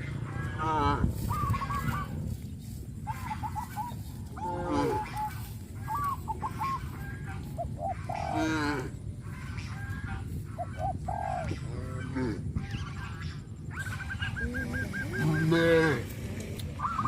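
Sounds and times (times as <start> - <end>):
steady low background noise: 0.0 - 17.0
cattle mooing: 4.4 - 5.4, 14.4 - 16.2.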